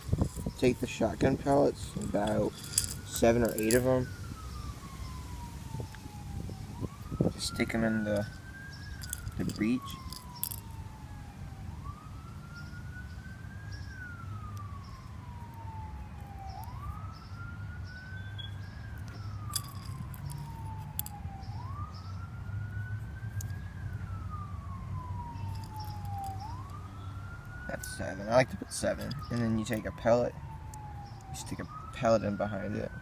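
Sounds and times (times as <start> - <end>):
siren wailing: 0.0 - 33.0
small clicks: 25.5 - 26.8.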